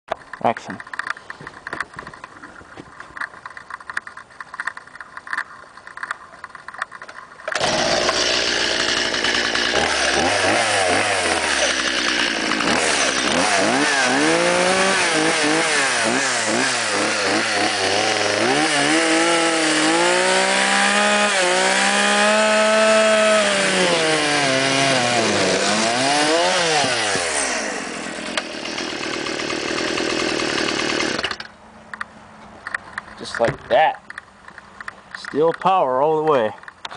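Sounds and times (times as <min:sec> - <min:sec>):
chainsaw revving: 0:07.5 - 0:31.5.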